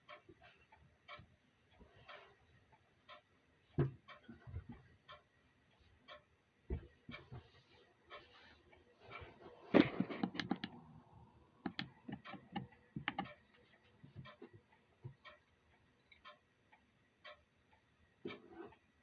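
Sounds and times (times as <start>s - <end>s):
clock ticking: 0.0s - 7.4s, 8.1s - 19.0s
irregular clicks: 9.7s - 10.9s, 11.6s - 14.5s.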